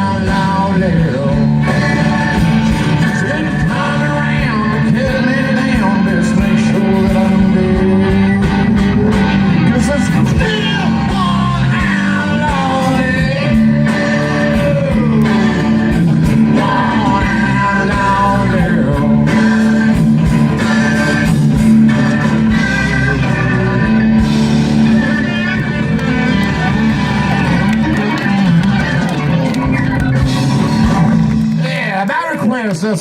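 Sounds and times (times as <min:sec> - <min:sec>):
sliding guitar lead line: 0:00.0 - 0:32.0
country-rock band playing: 0:00.0 - 0:33.0.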